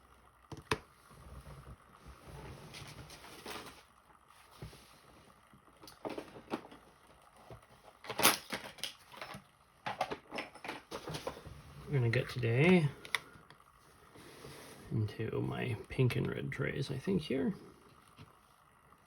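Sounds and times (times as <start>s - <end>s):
soft rubbing: 13.7s - 15.0s.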